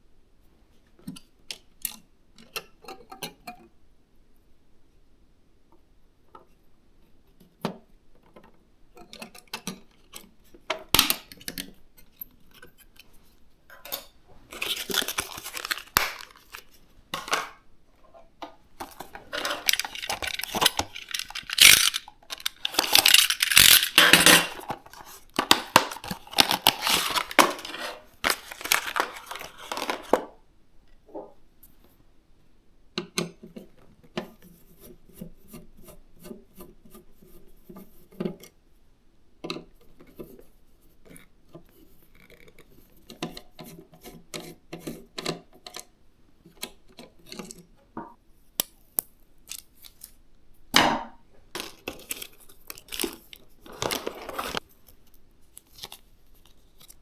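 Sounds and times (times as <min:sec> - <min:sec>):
packaging rustling and tearing: 0:14.4 - 0:17.6, 0:18.8 - 0:30.3, 0:51.6 - 0:57.0.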